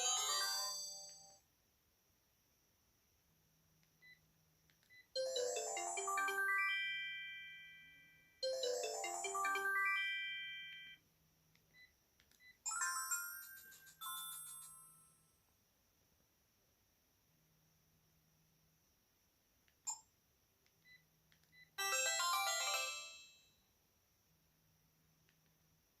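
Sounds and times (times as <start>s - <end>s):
phone ringtone melody: 5.2s - 7.8s, 8.4s - 11.0s, 21.8s - 23.3s.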